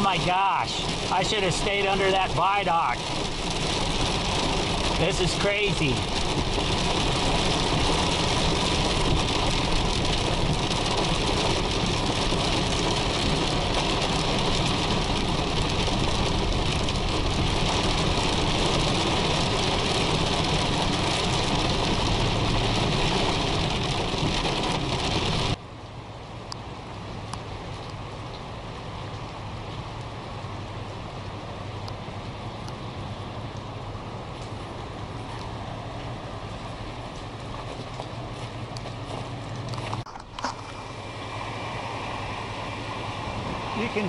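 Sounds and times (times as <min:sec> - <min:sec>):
heavy rain drumming on car roof: 0:00.0 - 0:25.7, 0:39.3 - 0:44.0.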